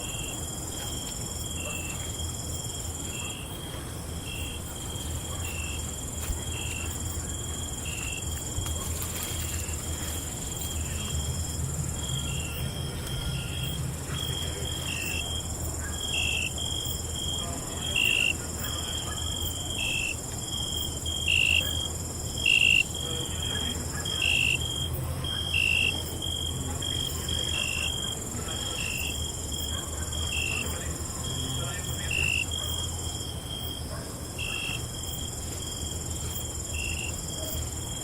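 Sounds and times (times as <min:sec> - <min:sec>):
crickets chirping: 0:00.0 - 0:38.0
high-pitched insect trill: 0:09.1 - 0:17.1.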